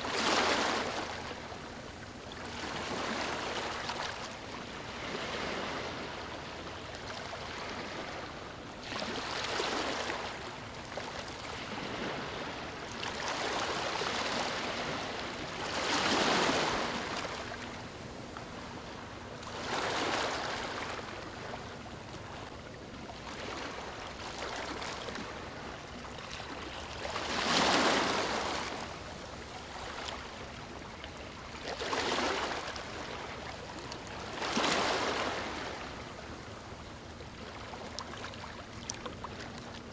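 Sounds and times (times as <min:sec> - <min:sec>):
waves breaking on a beach: 0:00.0 - 0:39.9.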